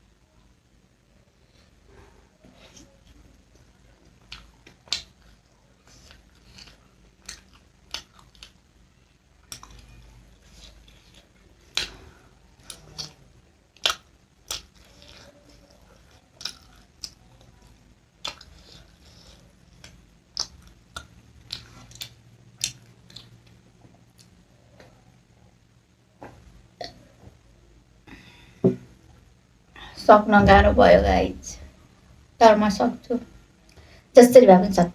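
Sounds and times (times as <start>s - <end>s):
chewing and biting: 2.6s - 8.7s, 9.4s - 25.0s.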